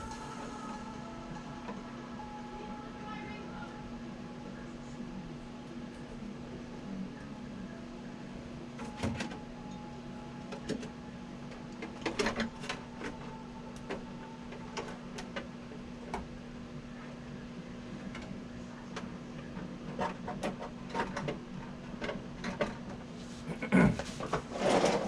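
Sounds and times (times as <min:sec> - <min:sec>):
low hum: 0:00.0 - 0:19.9.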